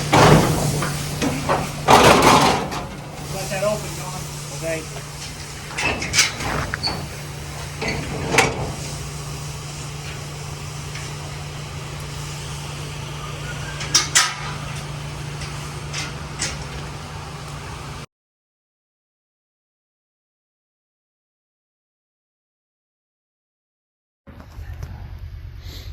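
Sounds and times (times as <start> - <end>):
low mechanical hum: 0.0 - 18.1, 24.3 - 25.9
sharp metal clanks: 13.8 - 14.8.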